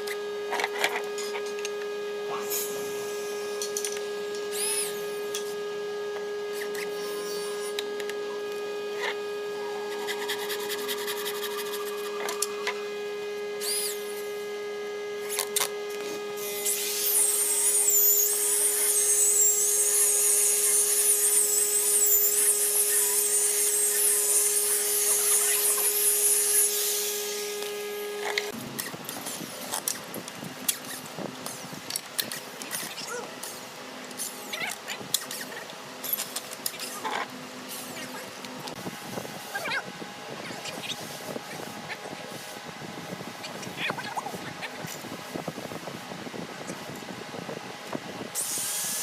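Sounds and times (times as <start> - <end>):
power tool humming: 0.0 - 30.0, 48.4 - 49.0
high-pitched wavering whine: 0.0 - 49.0.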